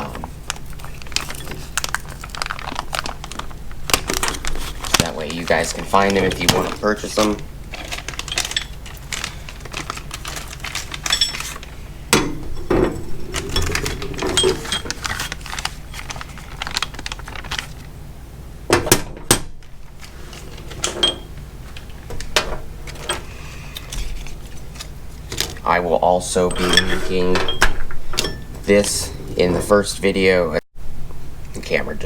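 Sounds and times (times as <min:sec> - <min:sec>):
metal parts clicking and clinking: 0:06.6 - 0:16.2.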